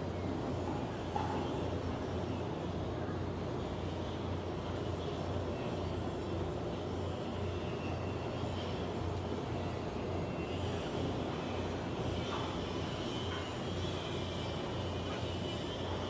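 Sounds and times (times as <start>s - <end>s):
heavy machinery droning: 5.6s - 16.0s.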